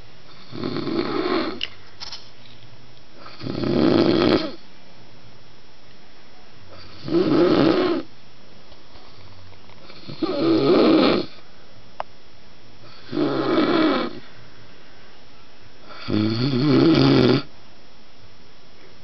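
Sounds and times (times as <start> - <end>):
man snoring: 0.3 - 1.6, 3.2 - 4.6, 6.8 - 8.1, 9.1 - 11.4, 12.8 - 14.2, 15.9 - 17.5.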